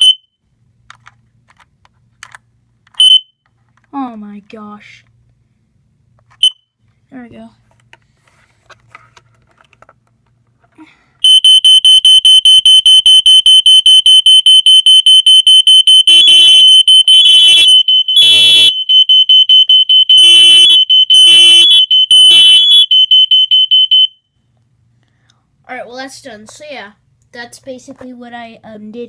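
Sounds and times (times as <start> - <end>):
lower-toned alarm long beeps: 0.0 - 0.3, 3.0 - 3.3, 11.2 - 24.2
high-pitched rapid alarm beeping: 11.2 - 24.2.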